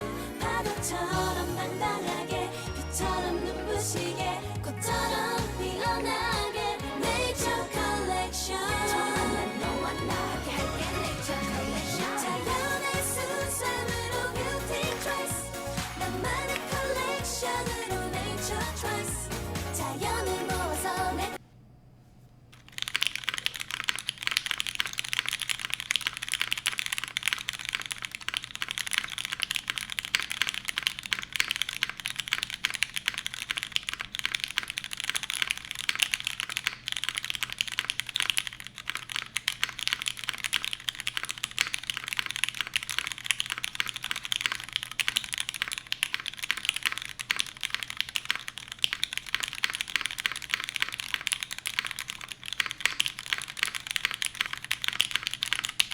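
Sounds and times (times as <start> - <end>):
typing on mechanical keyboard: 11.8 - 18.8, 22.5 - 55.9.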